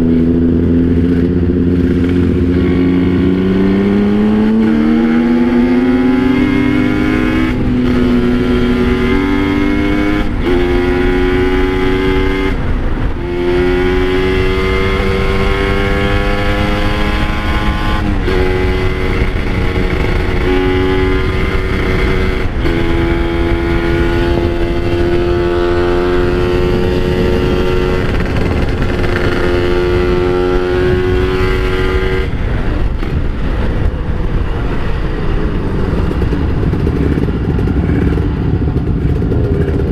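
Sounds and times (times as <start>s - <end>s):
two-stroke engine revving: 0.0s - 32.9s.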